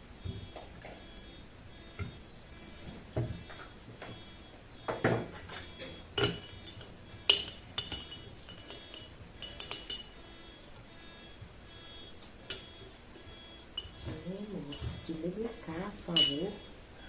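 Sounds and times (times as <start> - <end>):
utensil tapping glass jar: 6.2 - 10.1, 16.2 - 16.4.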